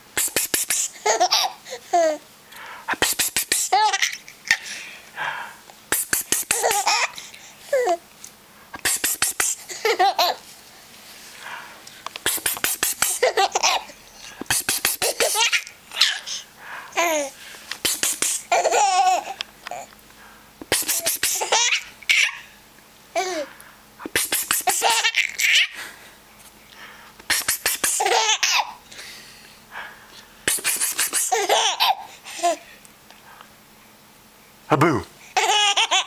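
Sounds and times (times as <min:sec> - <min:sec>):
man making breathy hissing noise: 0:00.0 - 0:01.0, 0:02.5 - 0:07.8, 0:08.7 - 0:13.4, 0:14.0 - 0:18.7, 0:20.2 - 0:21.8, 0:23.2 - 0:28.2, 0:28.9 - 0:31.5
baby girl giggling and squealing: 0:03.0 - 0:04.7, 0:06.3 - 0:08.0, 0:09.0 - 0:10.5, 0:12.4 - 0:14.0, 0:14.7 - 0:17.4, 0:18.0 - 0:19.9, 0:20.9 - 0:22.5, 0:24.6 - 0:25.8, 0:27.6 - 0:28.8, 0:31.0 - 0:32.6, 0:35.4 - 0:36.0.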